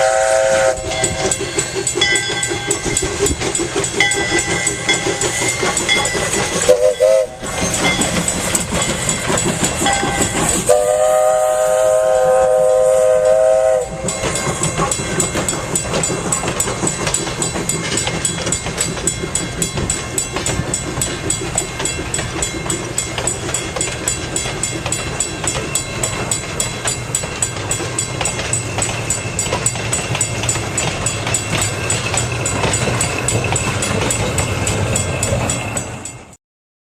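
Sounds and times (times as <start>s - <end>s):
steam locomotive whistle: 0.0s - 1.5s, 6.6s - 8.0s, 9.8s - 14.9s
train clattering past: 0.0s - 36.4s.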